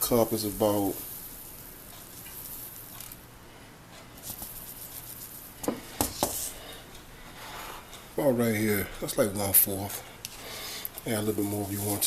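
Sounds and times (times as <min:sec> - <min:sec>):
dry grits rustling and pattering: 0:04.2 - 0:06.6, 0:11.0 - 0:12.0.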